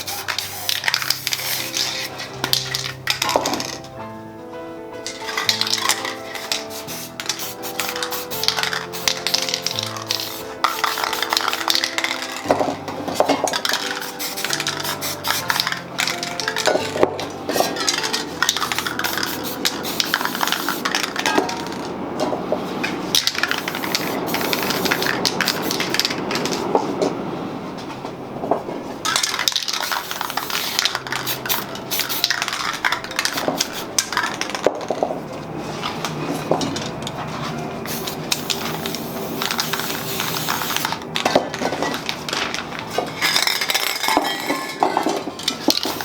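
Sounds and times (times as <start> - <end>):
aerosol spray hiss: 0.0 - 3.8, 5.1 - 16.7, 17.5 - 21.7, 23.2 - 26.6, 29.6 - 34.0, 37.9 - 41.0, 45.7 - 46.0
metallic clinks and scraping of cans: 0.0 - 3.9, 5.1 - 21.9, 22.8 - 26.7, 29.0 - 35.2, 35.8 - 46.0
faint music: 0.0 - 46.0.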